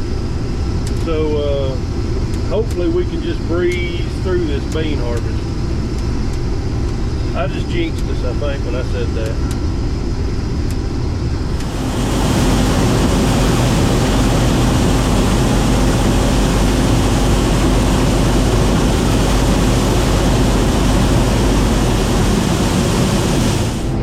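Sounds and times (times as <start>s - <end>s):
low engine hum: 0.0s - 24.0s
machine rushing noise: 11.3s - 24.0s.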